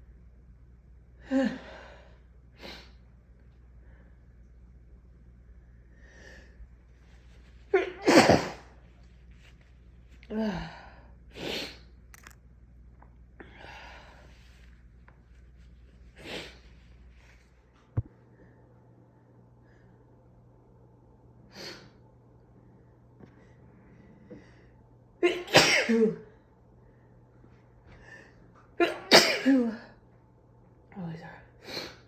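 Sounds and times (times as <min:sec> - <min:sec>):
person sneezing: 0:07.8 - 0:08.8, 0:25.2 - 0:26.2.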